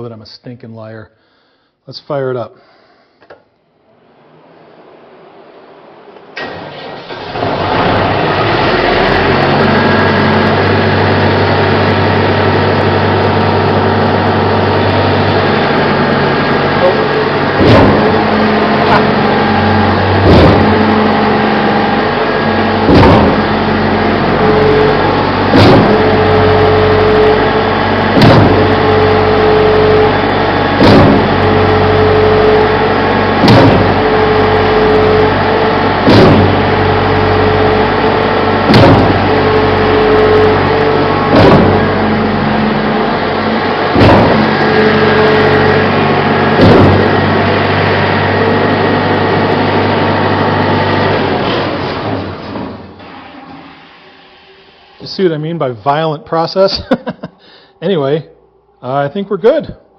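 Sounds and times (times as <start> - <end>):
concrete pump engine droning: 2.6 - 59.9
loud valve bang: 6.4 - 55.3.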